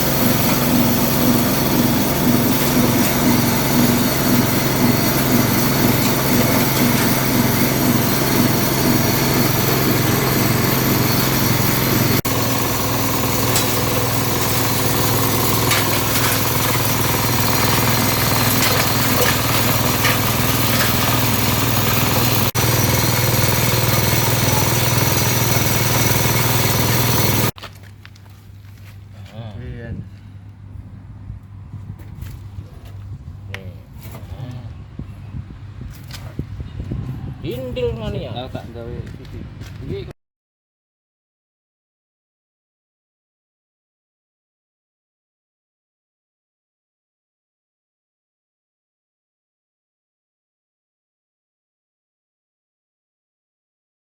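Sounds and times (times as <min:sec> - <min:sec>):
grinding machine motor: 0:00.0 - 0:27.6.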